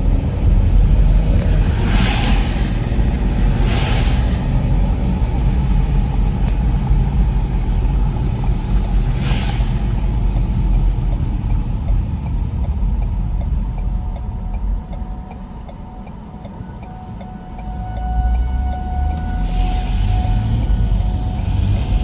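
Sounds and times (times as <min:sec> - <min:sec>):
whoosh: 0:00.0 - 0:11.7, 0:18.3 - 0:22.0
loud low rumble: 0:00.0 - 0:22.0.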